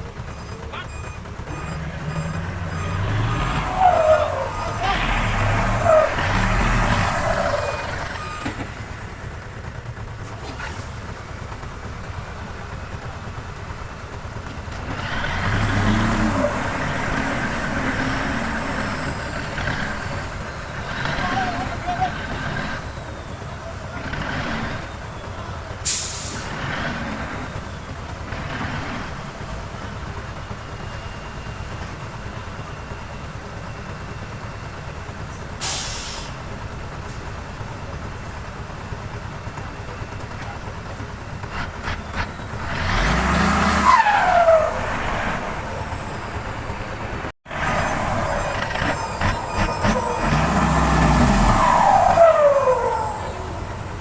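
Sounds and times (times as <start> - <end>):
heavy diesel machinery running: 0.0 - 54.0
squeal falling in pitch: 0.2 - 8.4, 48.2 - 53.7.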